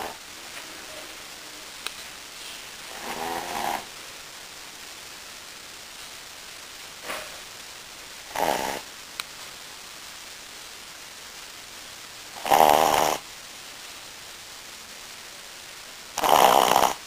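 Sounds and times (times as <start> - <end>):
dog snoring: 2.9 - 3.9, 8.3 - 8.9, 12.4 - 13.2, 16.2 - 17.0.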